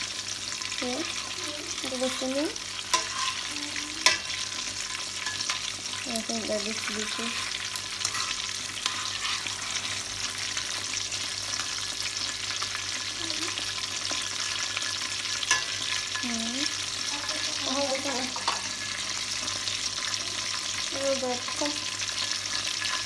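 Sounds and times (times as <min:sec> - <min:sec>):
food frying in a pan: 0:00.0 - 0:23.0.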